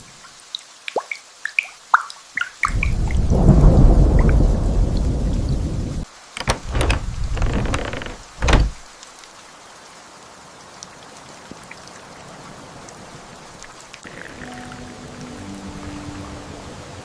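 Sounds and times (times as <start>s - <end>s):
rain patter: 0.0s - 17.0s
thunder rumbling and crackling: 2.7s - 8.8s.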